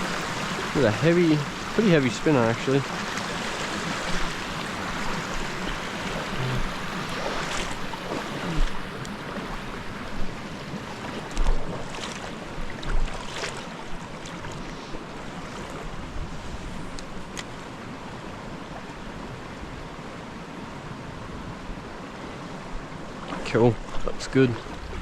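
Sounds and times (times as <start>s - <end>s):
stream water rushing: 0.0s - 25.0s
wind buffeting microphone: 15.7s - 17.3s, 24.7s - 25.0s.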